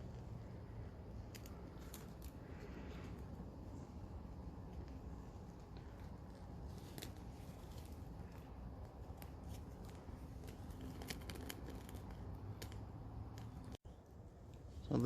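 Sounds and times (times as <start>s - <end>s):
steady low background noise: 0.0s - 15.0s
clicks and rustles of handling: 4.5s - 13.8s.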